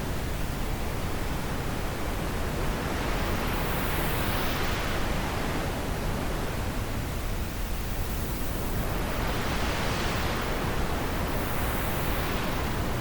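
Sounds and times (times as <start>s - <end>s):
wind blowing with hissing rush: 8.0s - 13.0s.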